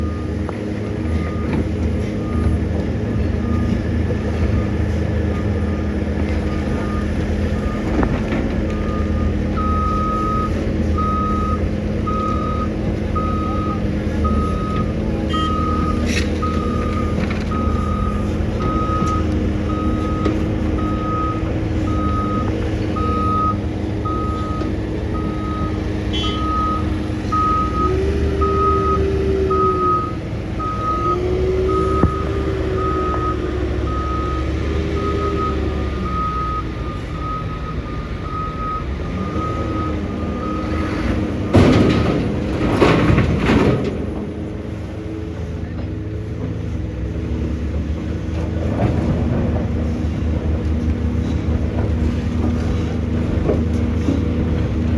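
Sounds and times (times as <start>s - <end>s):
reversing alarm beeping: 0.0s - 8.1s, 8.7s - 42.2s
diesel engine revving: 0.0s - 54.9s.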